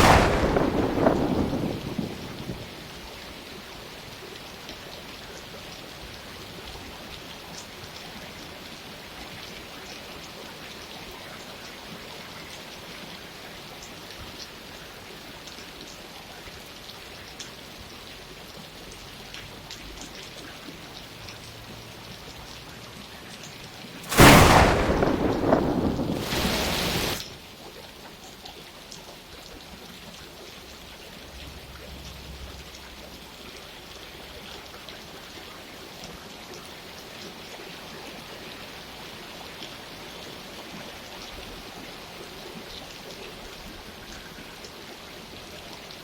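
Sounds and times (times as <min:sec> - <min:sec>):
thunder rumbling: 0:00.0 - 0:03.1, 0:24.0 - 0:27.2
steady rain: 0:00.0 - 0:46.0.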